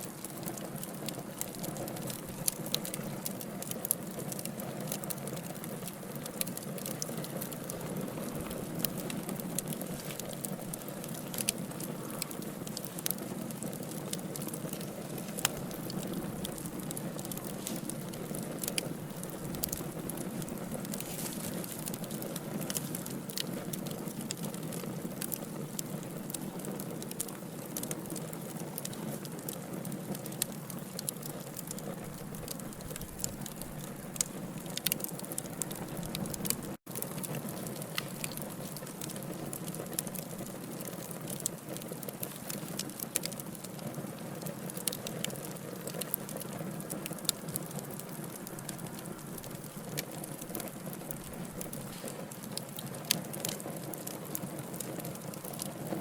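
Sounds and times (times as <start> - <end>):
logs crackling and popping: 0.0 - 56.0
flames rushing in fireplace: 0.1 - 56.0.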